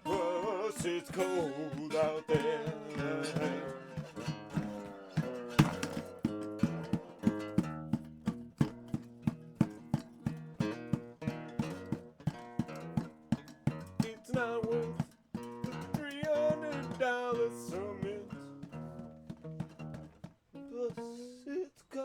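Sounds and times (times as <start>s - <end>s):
guitar strumming: 0.0s - 21.2s.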